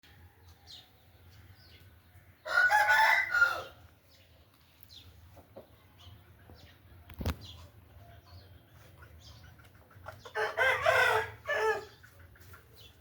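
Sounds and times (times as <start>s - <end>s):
rooster crowing: 2.4s - 3.8s, 10.4s - 11.9s.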